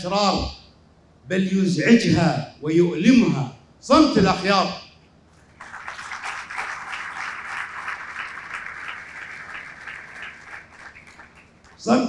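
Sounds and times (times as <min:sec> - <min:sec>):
audience applauding: 0:05.4 - 0:11.9.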